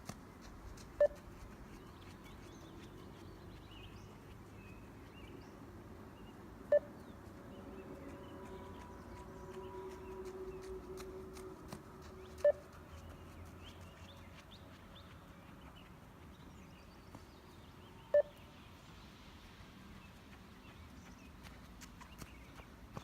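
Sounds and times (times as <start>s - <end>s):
faint hum: 0.0s - 21.6s
short electronic beeps: 6.7s - 7.0s, 18.1s - 18.4s.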